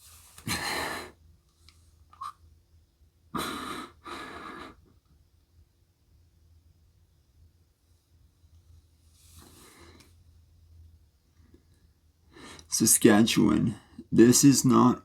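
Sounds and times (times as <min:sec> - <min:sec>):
person breathing noisily: 0:03.4 - 0:04.8.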